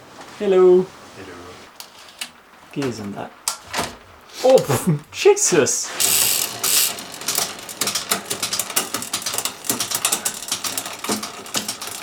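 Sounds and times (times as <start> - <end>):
ratcheting clicks: 6.0 - 12.0.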